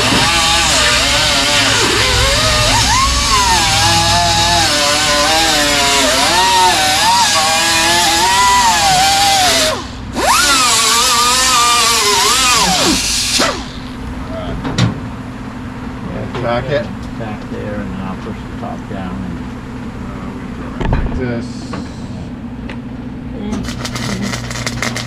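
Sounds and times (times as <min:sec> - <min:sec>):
angle grinder whining: 0:00.0 - 0:14.0.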